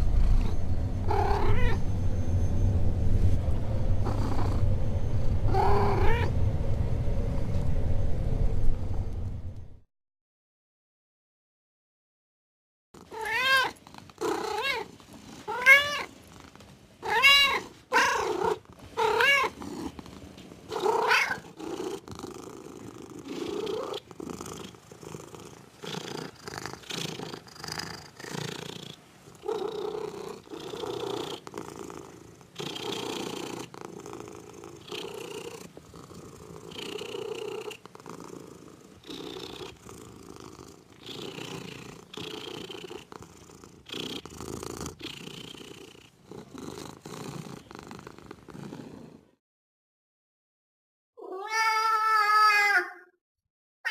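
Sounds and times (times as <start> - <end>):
cat purring: 0.0 - 2.4, 3.2 - 6.4, 13.0 - 49.4
cat meowing: 1.1 - 1.8, 5.5 - 6.3, 13.0 - 14.9, 15.5 - 16.1, 17.0 - 19.6, 20.7 - 21.4, 51.2 - 53.2.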